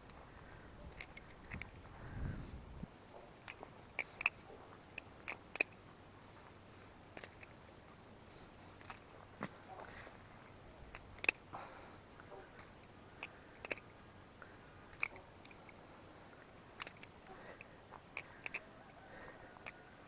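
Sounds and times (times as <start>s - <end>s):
butterfly knife clicking and clacking: 3.4s - 5.8s, 7.2s - 7.5s, 10.9s - 11.4s, 12.6s - 13.9s, 14.9s - 15.8s, 16.8s - 18.7s.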